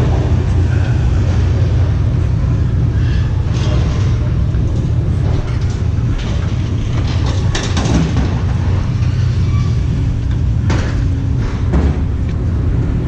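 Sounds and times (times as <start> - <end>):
truck engine rumbling: 0.0 - 13.0.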